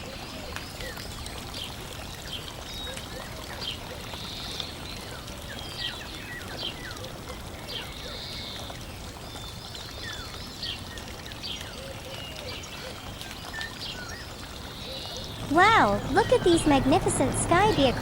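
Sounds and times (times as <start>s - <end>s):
birds chirping: 15.3s - 18.0s
running water: 15.3s - 18.0s.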